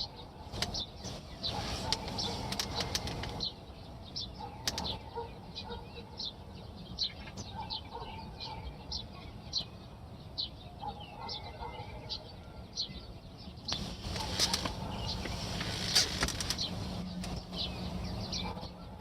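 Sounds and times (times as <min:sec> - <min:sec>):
small bird chirping: 0:00.0 - 0:19.0
wind on microphone: 0:00.5 - 0:03.6, 0:13.7 - 0:18.6
sharp clicks: 0:01.8 - 0:03.4, 0:04.6 - 0:05.0, 0:13.7 - 0:17.4.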